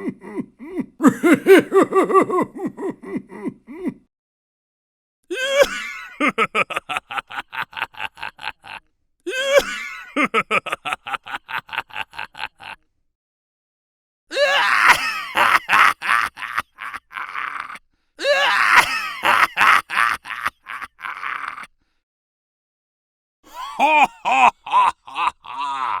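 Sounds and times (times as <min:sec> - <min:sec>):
rough cartoon vocal sound: 0:00.0 - 0:04.0, 0:23.5 - 0:26.0.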